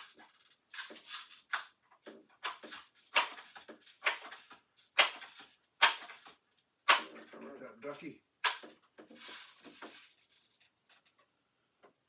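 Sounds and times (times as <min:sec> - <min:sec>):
bb gun shots: 0:05.8 - 0:06.1, 0:06.9 - 0:07.2.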